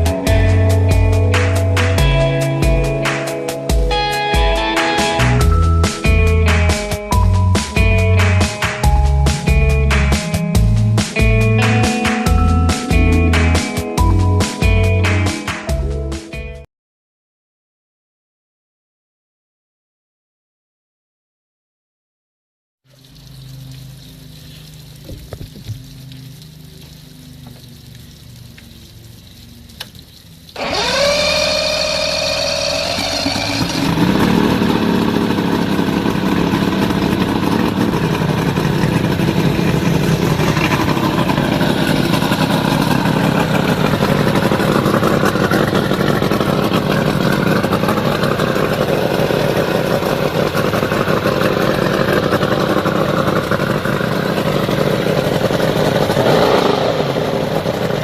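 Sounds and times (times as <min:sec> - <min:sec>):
outboard engine running: 0:00.0 - 0:13.3, 0:22.9 - 0:29.8, 0:30.6 - 0:58.0
electric starter whining: 0:23.5 - 0:58.0.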